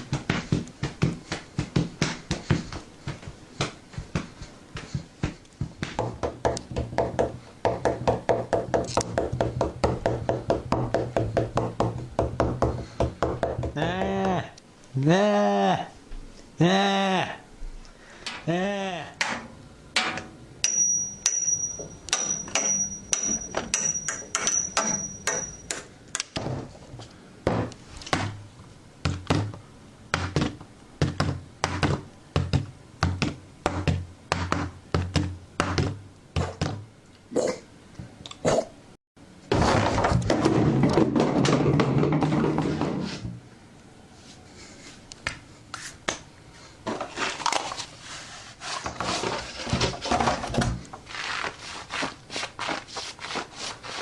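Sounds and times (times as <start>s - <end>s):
knocks and thuds: 0.0s - 14.3s, 26.3s - 26.8s, 27.4s - 28.4s, 29.0s - 36.8s, 39.5s - 43.4s.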